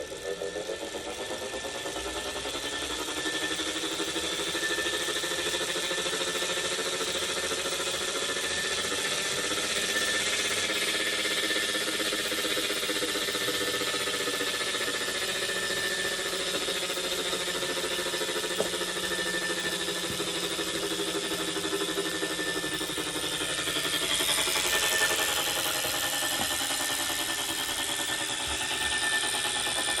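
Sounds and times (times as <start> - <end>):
bike trainer humming: 0.0 - 30.0
high-pitched whine: 0.0 - 30.0.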